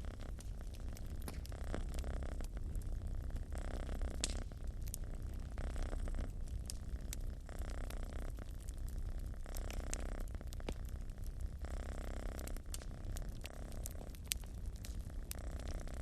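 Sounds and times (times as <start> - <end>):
cat purring: 0.0 - 16.0
wood fire crackling: 0.0 - 16.0.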